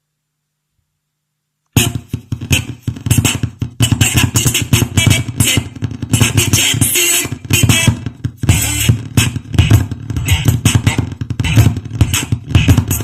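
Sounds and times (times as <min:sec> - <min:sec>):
faint hum: 0:00.0 - 0:02.4
music with heavy beat: 0:01.8 - 0:13.0.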